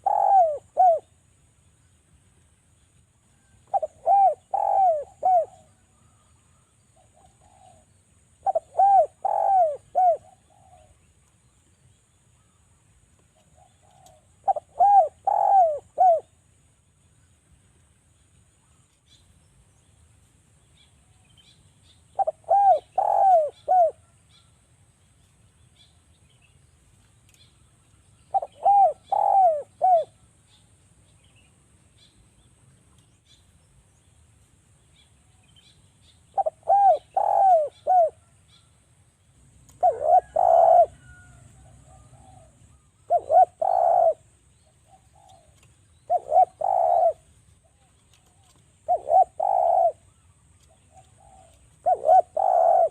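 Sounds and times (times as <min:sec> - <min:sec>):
doves cooing: 0:00.0 - 0:01.2, 0:03.6 - 0:05.9, 0:07.0 - 0:11.0, 0:13.4 - 0:16.4, 0:22.2 - 0:24.1, 0:28.3 - 0:30.2, 0:36.3 - 0:38.4, 0:39.7 - 0:52.9
faint small bird chirps: 0:20.6 - 0:34.2, 0:39.7 - 0:52.9.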